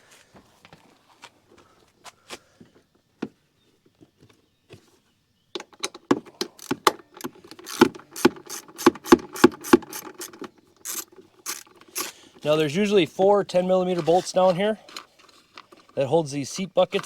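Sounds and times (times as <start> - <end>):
hand tools clicking and knocking: 5.6 - 17.0
ratchet wrench clicking: 6.5 - 12.2.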